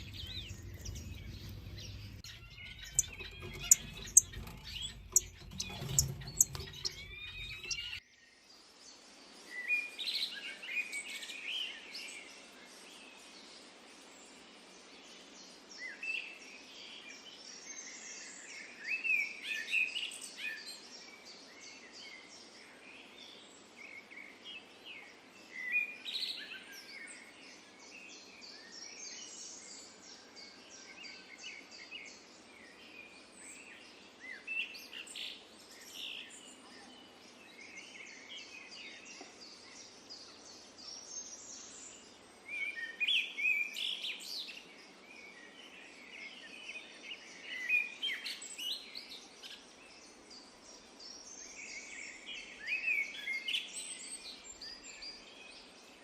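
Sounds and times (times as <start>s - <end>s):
low rumble: 0.0s - 8.0s
sliding bird calls: 0.0s - 8.0s
faint steady hiss: 0.0s - 10.8s
songbirds chirping: 0.0s - 12.2s, 20.2s - 56.0s.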